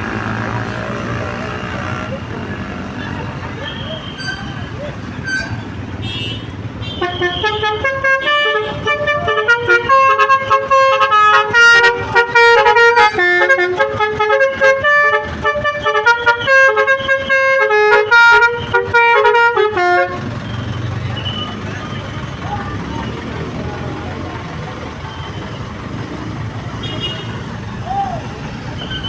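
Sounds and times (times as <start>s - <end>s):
bus air horn playing a tune: 5.2s - 20.4s, 26.8s - 27.4s.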